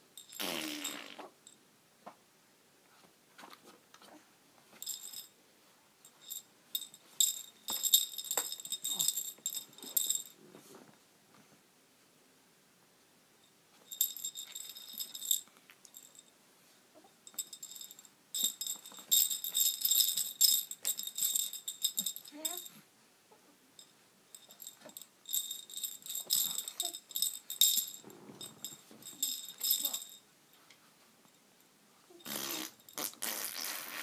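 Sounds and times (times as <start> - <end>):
small bells jingling: 4.8 - 5.4, 6.0 - 10.4, 13.8 - 16.3, 17.2 - 22.8, 23.8 - 30.2.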